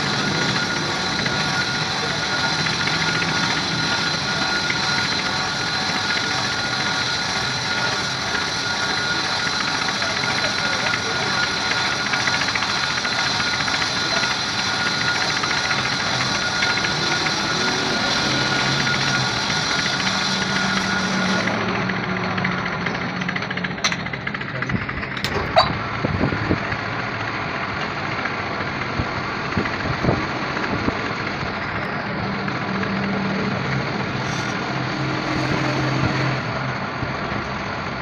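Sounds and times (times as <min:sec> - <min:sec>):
engine idling: 0:00.0 - 0:38.0
sharp metallic clicks and knocks: 0:21.5 - 0:25.8.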